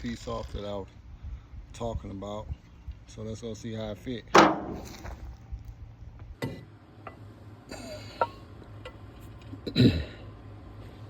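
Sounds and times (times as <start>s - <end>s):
low steady hum: 0.0s - 11.0s
thump: 4.4s - 5.1s.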